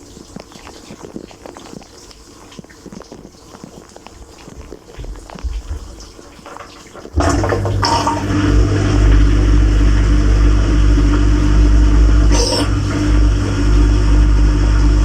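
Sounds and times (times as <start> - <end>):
water spraying and splashing: 0.0 - 14.0
dishwasher pump humming: 5.0 - 15.0.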